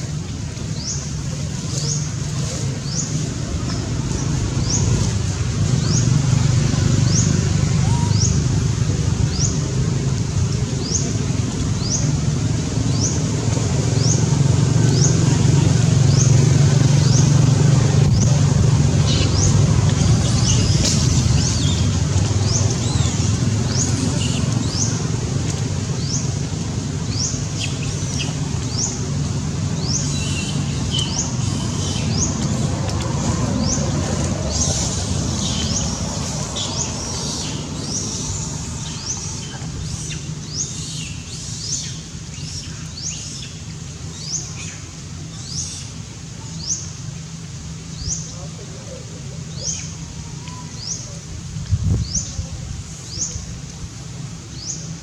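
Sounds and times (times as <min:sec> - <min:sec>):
low rumble: 0:00.0 - 0:40.6.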